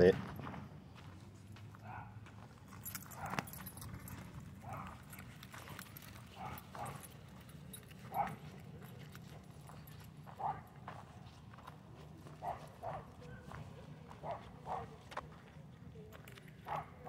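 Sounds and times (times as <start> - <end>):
dogs playing: 2.8 - 11.4.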